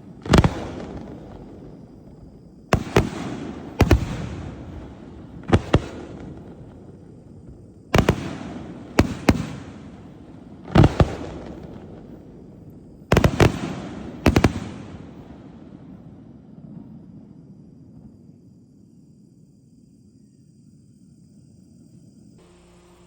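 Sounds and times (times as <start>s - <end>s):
firework hiss: 0.0s - 15.3s
firework shells booming: 0.0s - 17.0s.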